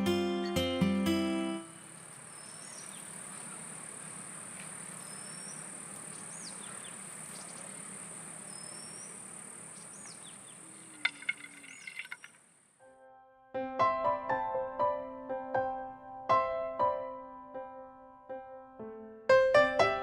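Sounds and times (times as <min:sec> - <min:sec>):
bird chirps: 0:01.8 - 0:12.4
high-pitched insect trill: 0:02.3 - 0:12.5.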